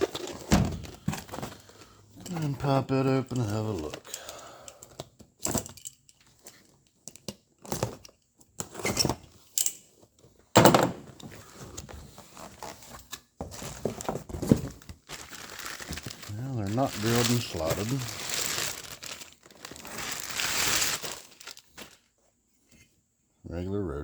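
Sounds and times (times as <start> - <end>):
cardboard packaging rustling: 0.0 - 4.1, 11.2 - 22.2.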